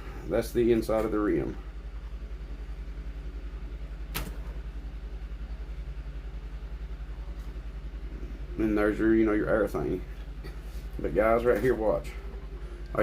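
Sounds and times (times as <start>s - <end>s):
low machine hum with flutter: 0.0s - 13.0s
sharp click: 4.1s - 4.5s.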